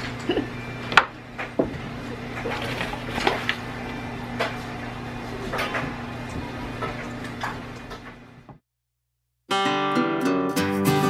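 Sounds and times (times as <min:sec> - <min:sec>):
electrical hum: 0:00.0 - 0:08.6.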